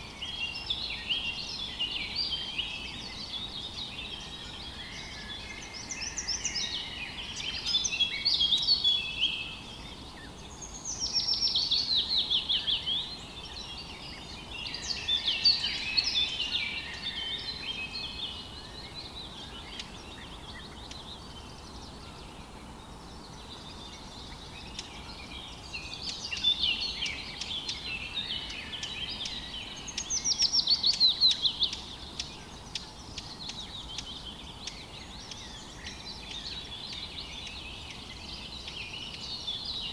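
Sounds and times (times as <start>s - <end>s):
songbirds singing: 0.0s - 39.9s.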